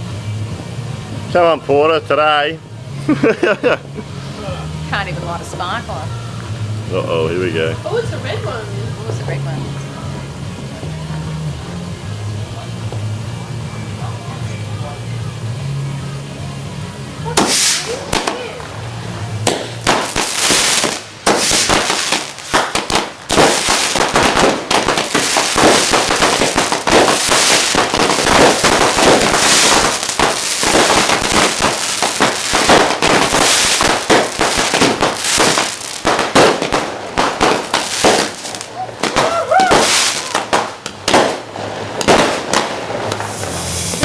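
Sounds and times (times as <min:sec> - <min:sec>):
fireworks bangs and crackles: 0:16.6 - 0:44.0.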